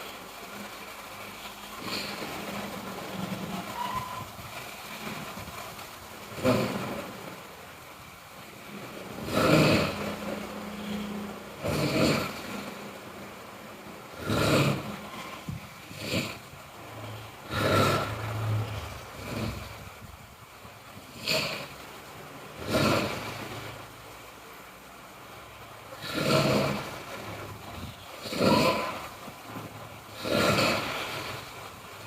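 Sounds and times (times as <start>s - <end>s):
low steady hum: 0.0s - 32.0s
person snoring: 9.1s - 12.8s, 14.2s - 16.4s, 17.0s - 19.8s, 22.6s - 23.5s, 26.0s - 27.0s, 28.2s - 29.0s, 30.2s - 31.5s.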